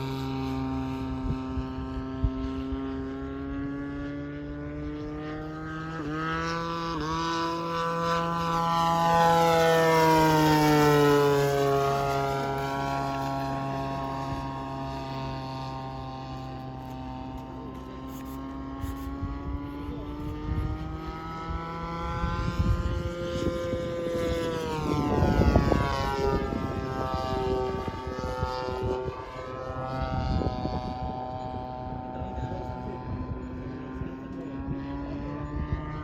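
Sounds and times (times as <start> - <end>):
model airplane engine buzzing: 0.0 - 36.0.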